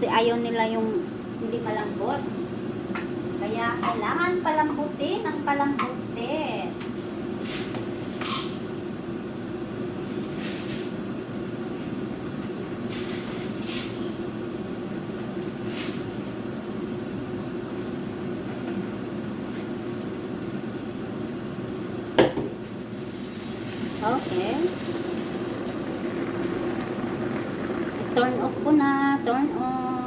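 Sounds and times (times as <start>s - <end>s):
curry simmering in a wok: 22.7s - 29.2s.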